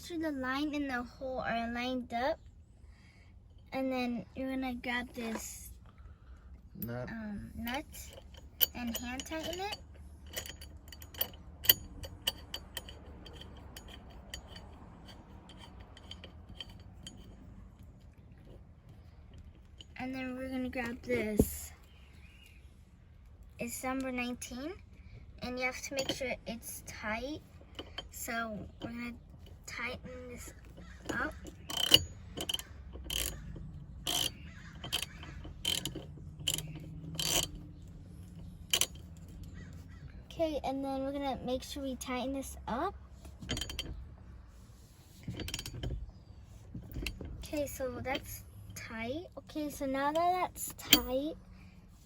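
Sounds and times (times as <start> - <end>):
metal nut clinking and ticking: 6.8 - 22.0, 25.6 - 40.0, 43.2 - 44.2, 45.1 - 48.9, 49.7 - 51.4
ratchet wrench clicking: 7.6 - 17.4, 27.6 - 40.0, 43.2 - 44.0, 45.2 - 46.1, 50.1 - 51.3.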